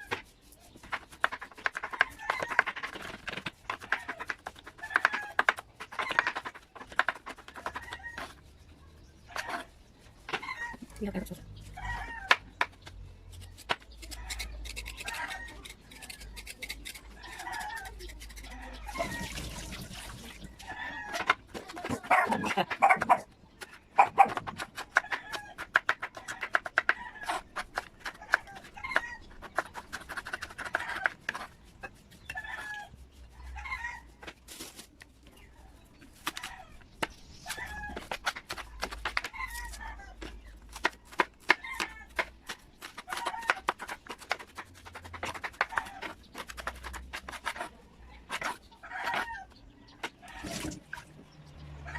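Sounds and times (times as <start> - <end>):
chickens clucking: 20.3 - 31.5.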